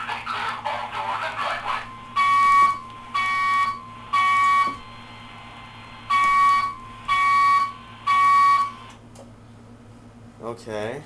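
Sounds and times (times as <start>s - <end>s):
fire alarm tone pulses: 1.7s - 9.0s.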